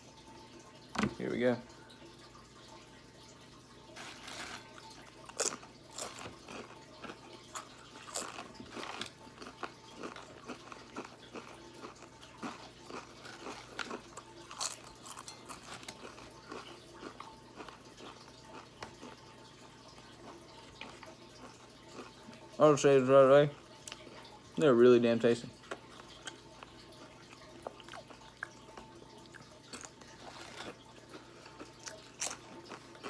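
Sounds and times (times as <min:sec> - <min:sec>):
person chewing crisp chips: 0:03.9 - 0:22.6, 0:25.6 - 0:33.0.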